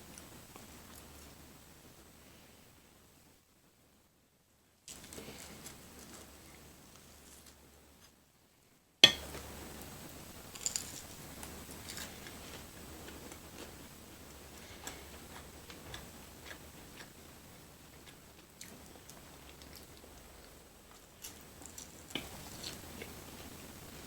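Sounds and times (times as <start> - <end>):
chewing with wet clicks: 18.0 - 22.3.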